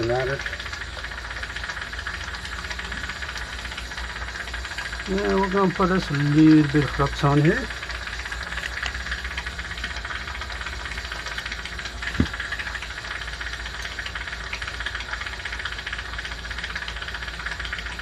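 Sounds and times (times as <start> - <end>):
machine hum with hiss: 0.0 - 18.0.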